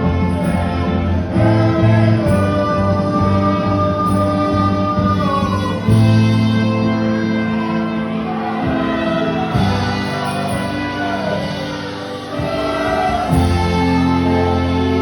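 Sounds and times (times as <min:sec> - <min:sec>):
gospel singing voices: 0:00.0 - 0:15.0
sustained instrumental chords: 0:00.0 - 0:15.0.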